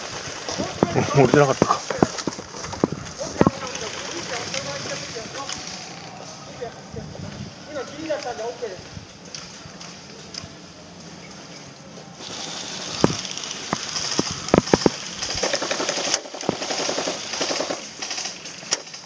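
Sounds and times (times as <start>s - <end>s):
airsoft guns firing automatic: 0.0s - 6.7s, 12.2s - 19.0s.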